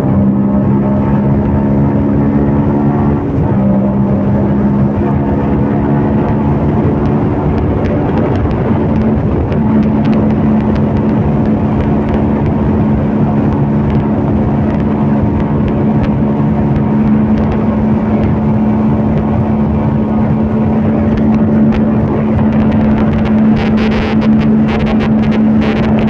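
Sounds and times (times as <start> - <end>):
motorcycle engine running: 0.0 - 26.0
rushing noise: 17.3 - 26.0.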